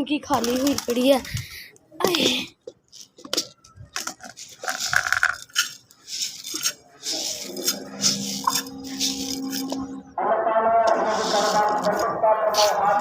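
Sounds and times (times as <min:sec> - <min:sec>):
plate clicking and scraping: 0:02.9 - 0:10.0
steady low tone: 0:07.5 - 0:11.1.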